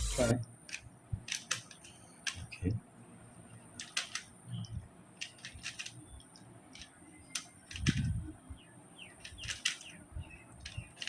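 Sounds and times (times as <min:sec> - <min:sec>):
puzzle cube clicking: 0:00.7 - 0:02.5, 0:03.8 - 0:04.3, 0:05.2 - 0:08.0, 0:09.2 - 0:09.9, 0:10.6 - 0:11.0.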